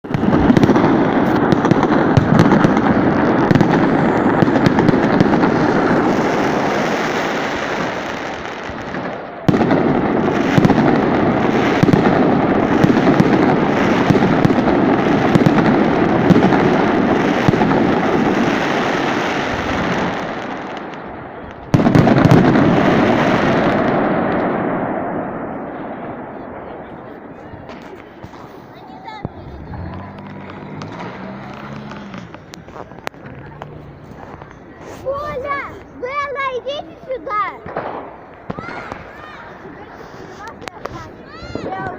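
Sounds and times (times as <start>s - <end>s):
fireworks bangs and crackles: 0.0s - 41.9s.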